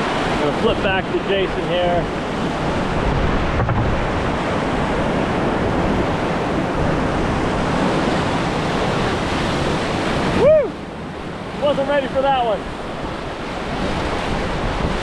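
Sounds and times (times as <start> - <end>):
river rapid rushing: 0.0 - 15.0.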